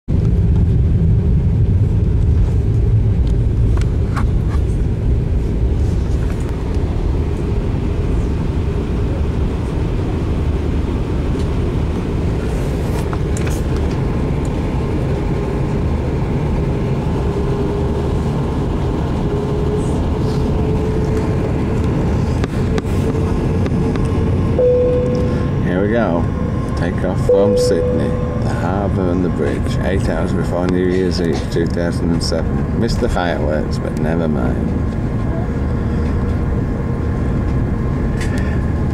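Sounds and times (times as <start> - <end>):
jet engines low rumble: 0.1 - 38.9
faint rising tone: 24.6 - 29.5.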